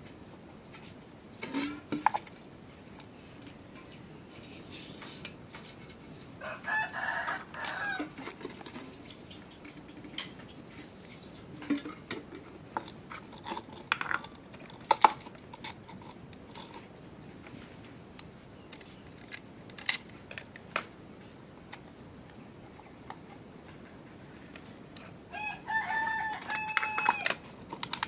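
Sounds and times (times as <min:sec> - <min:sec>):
rooster crowing: 0:06.4 - 0:08.4, 0:25.3 - 0:27.4.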